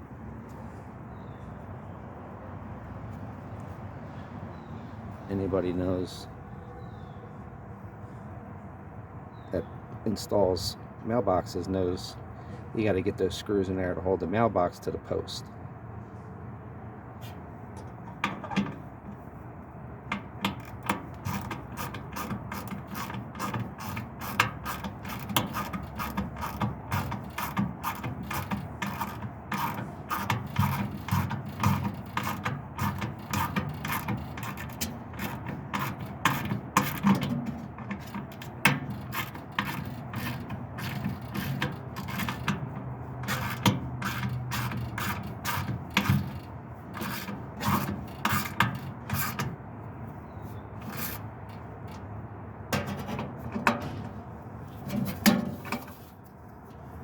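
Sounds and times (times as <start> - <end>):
ratchet clicking: 20.1 - 49.6, 50.8 - 52.1.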